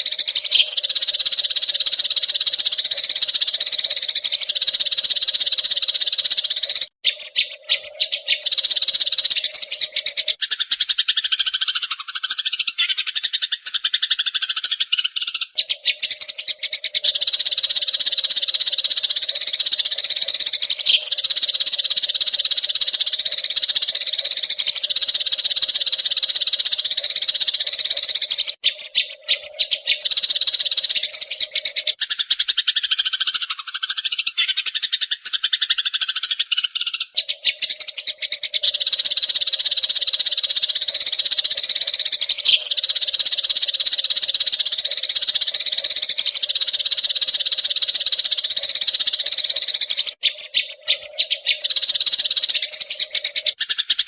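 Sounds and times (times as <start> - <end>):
sparrows chirping: 0.0 - 54.0.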